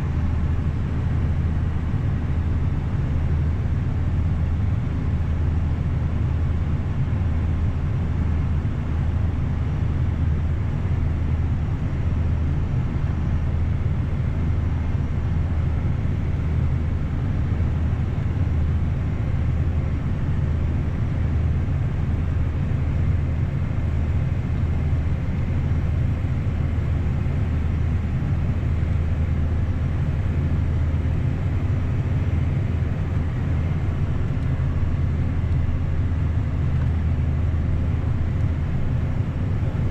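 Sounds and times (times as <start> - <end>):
harvest machinery engine drone: 0.0 - 39.9.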